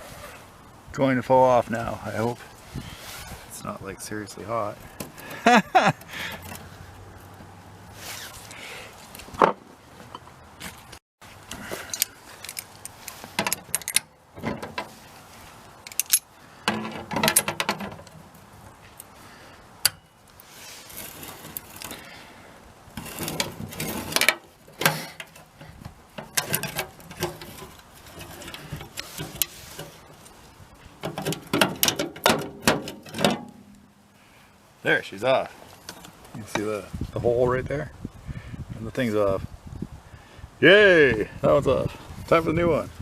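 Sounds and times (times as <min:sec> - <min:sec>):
hand tools clicking on metal latch: 0:13.4 - 0:14.8, 0:15.9 - 0:18.1, 0:26.2 - 0:29.5, 0:31.0 - 0:33.8.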